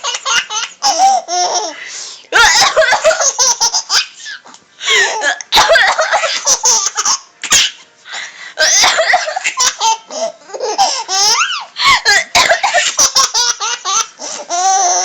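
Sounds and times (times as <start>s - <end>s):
baby laughing: 0.0s - 1.8s, 2.4s - 7.8s, 8.6s - 15.0s
baby coughing: 6.8s - 7.8s, 8.6s - 11.4s, 12.0s - 14.1s.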